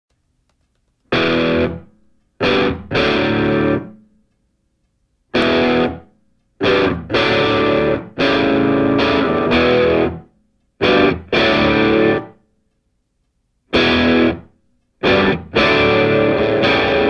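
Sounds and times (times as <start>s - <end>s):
distorted electric guitar chords: 1.1s - 4.1s, 5.3s - 12.4s, 13.7s - 17.0s.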